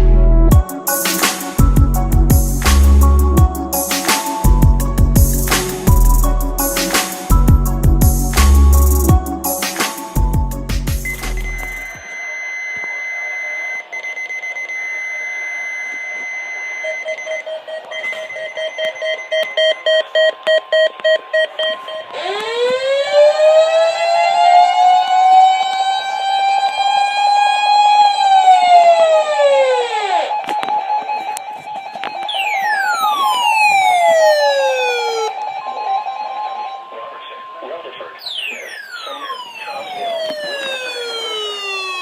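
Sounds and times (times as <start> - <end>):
siren winding up and down: 0.4 - 42.0
steady high-pitched alarm tone: 0.5 - 42.0
rapid pulsing beeps: 10.9 - 22.2, 30.3 - 42.0
pulsing tone: 11.0 - 22.4, 29.1 - 37.6, 38.2 - 42.0.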